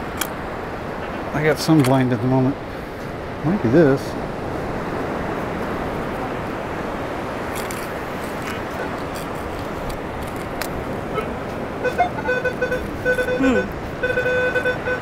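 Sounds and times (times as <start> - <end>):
surf rushing: 0.0 - 15.0
metal detector beeps: 11.2 - 15.0.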